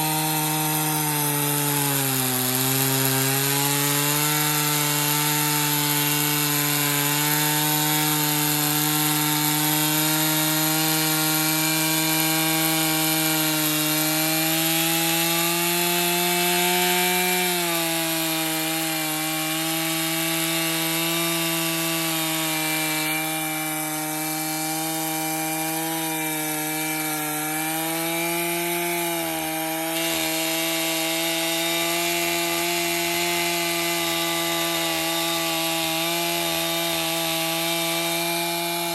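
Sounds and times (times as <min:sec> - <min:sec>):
chainsaw cutting a log: 0:00.0 - 0:38.9.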